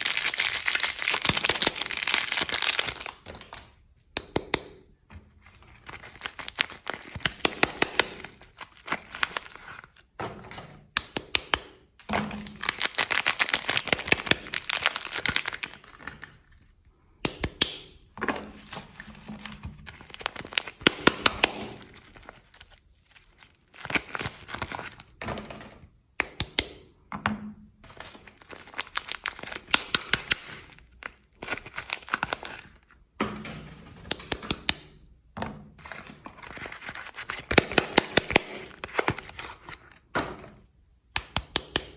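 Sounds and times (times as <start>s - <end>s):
wrappers crinkling and tearing: 0.0s - 3.6s, 5.5s - 10.1s, 12.4s - 16.7s, 19.8s - 25.2s, 27.9s - 32.9s, 35.8s - 40.0s.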